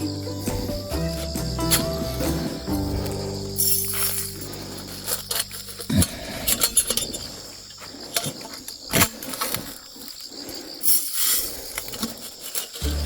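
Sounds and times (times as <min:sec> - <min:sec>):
background music: 0:00.0 - 0:06.6
insects chirping: 0:00.0 - 0:13.0.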